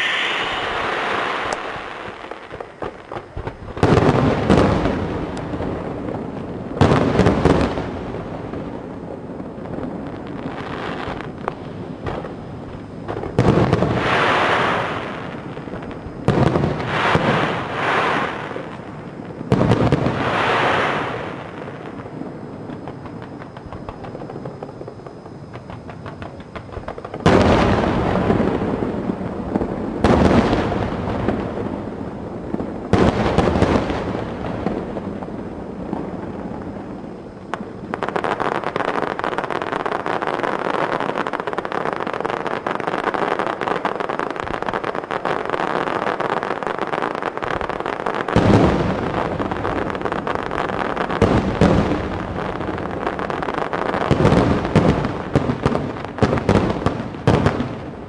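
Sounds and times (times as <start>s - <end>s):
firework booms: 0.0s - 58.0s
crackle of rapid pops: 22.6s - 27.6s.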